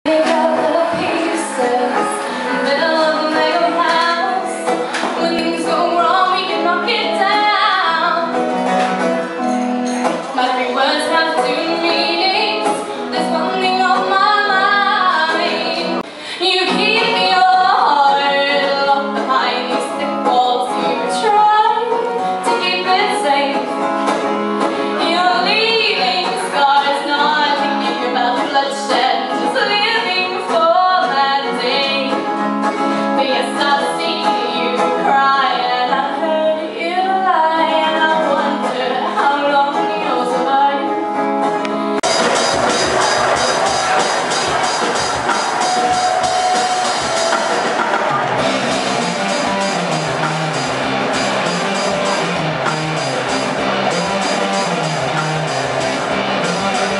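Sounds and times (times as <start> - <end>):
woman singing: 0.1 - 8.5, 10.4 - 23.9, 24.9 - 42.0
instrumental accompaniment: 0.1 - 56.9.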